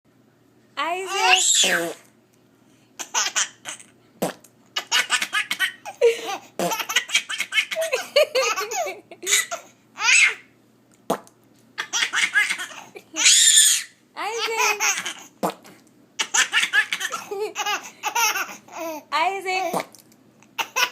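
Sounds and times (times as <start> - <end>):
baby laughing: 3.0 - 4.0, 4.8 - 10.4, 11.8 - 15.4, 16.2 - 19.1, 20.5 - 20.9.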